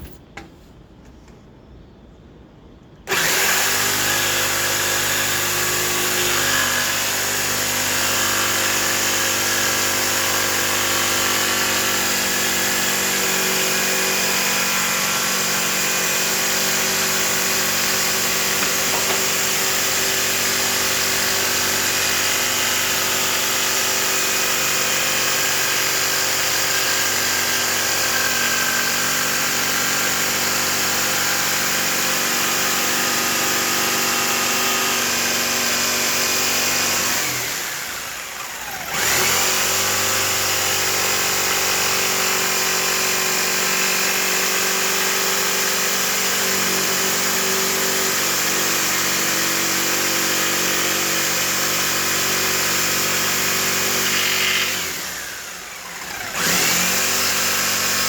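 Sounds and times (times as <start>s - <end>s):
electric saw cutting wood: 3.1s - 58.0s.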